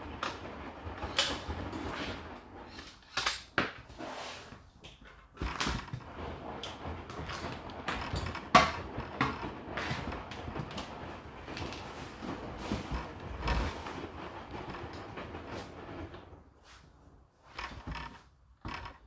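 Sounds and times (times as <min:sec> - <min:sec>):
dishwasher racks sliding: 0:00.0 - 0:19.0
dishes knocking and rattling: 0:05.0 - 0:10.9, 0:17.6 - 0:19.0.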